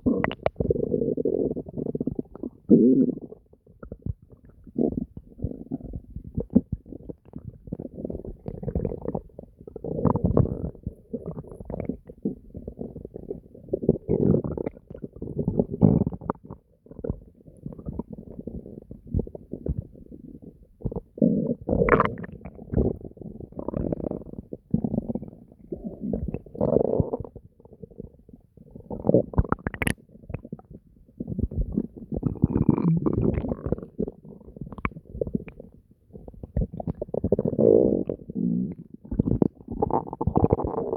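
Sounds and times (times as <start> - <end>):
stomach gurgling: 0.0 - 40.9
stomach squeaks: 31.3 - 35.6.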